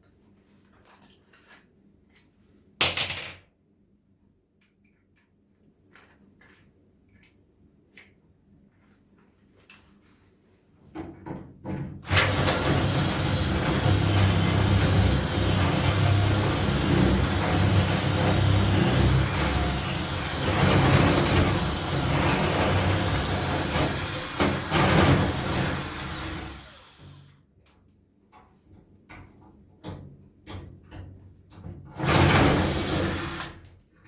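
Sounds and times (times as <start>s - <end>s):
metal tools clinking: 0.9s - 1.4s
electric drill boring into metal: 12.1s - 27.3s, 32.0s - 33.6s.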